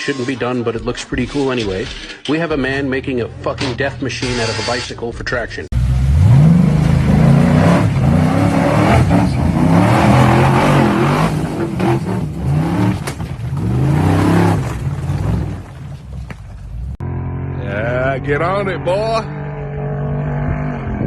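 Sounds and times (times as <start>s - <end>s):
engine revving hard: 5.8s - 15.5s.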